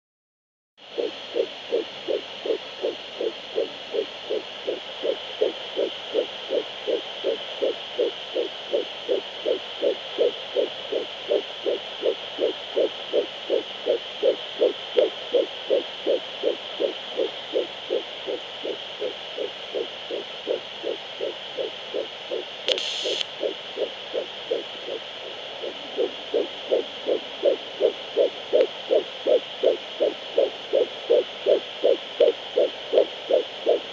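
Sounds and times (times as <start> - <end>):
fetal heartbeat on doppler monitor: 0.8 - 33.9
steady hiss: 15.6 - 33.9.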